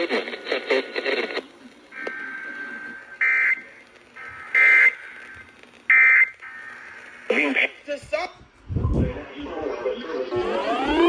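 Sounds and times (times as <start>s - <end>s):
buzzy data burst warbles: 10.3s - 11.0s.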